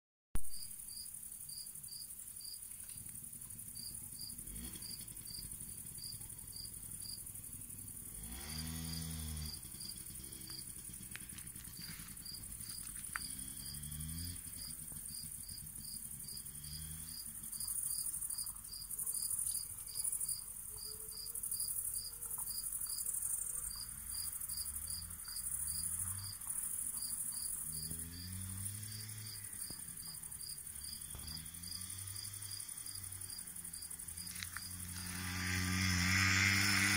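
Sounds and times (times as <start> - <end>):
crickets chirping: 0.4 - 36.9
low engine rising in pitch: 4.3 - 17.6, 27.6 - 36.9.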